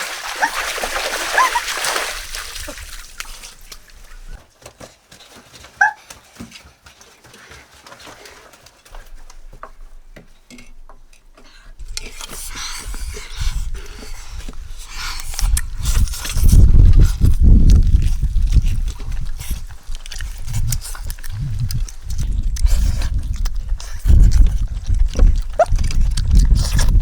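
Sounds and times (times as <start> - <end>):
faint knocks and rustles: 4.1 - 13.1.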